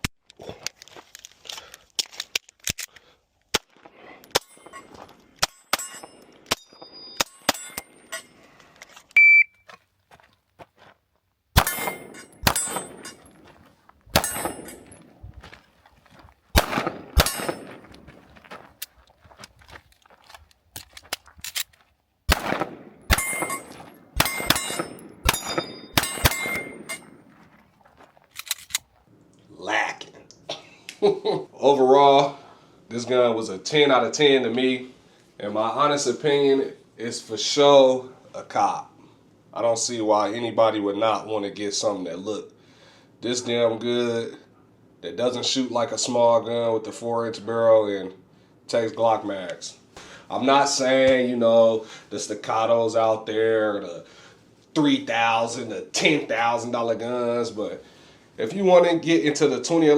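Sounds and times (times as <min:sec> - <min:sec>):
metallic ring: 0:04.4 - 0:08.4, 0:11.6 - 0:13.4, 0:14.2 - 0:15.0, 0:17.2 - 0:17.8, 0:23.1 - 0:27.2
shot timer beep: 0:09.2 - 0:09.6
pistol shots: 0:11.6 - 0:13.4, 0:14.1 - 0:15.2, 0:16.5 - 0:18.2, 0:22.3 - 0:27.5.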